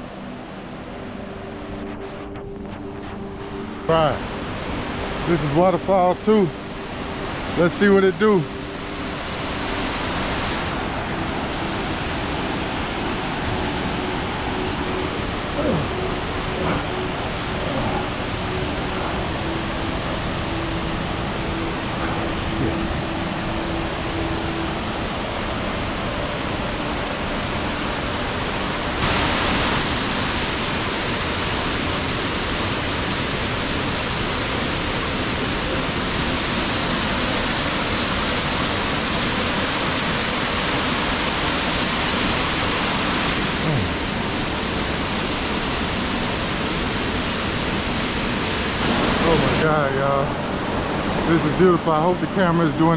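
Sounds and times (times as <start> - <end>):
waterfall rushing: 0.0 - 52.9.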